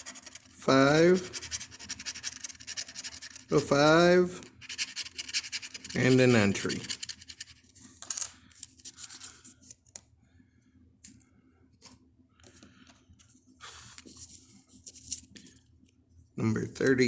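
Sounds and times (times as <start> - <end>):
coin scratching lottery ticket: 0.0 - 3.8, 4.6 - 7.6
coin clinking on hard surface: 8.0 - 8.4.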